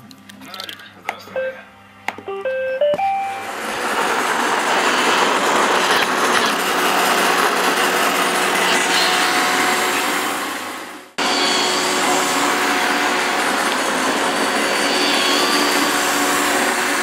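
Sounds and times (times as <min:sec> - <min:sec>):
robot vacuum whirring: 0:03.3 - 0:10.1.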